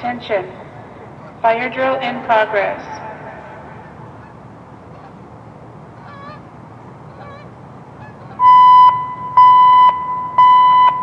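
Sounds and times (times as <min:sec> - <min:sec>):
loudspeaker alert beeps: 0:08.4 - 0:11.0.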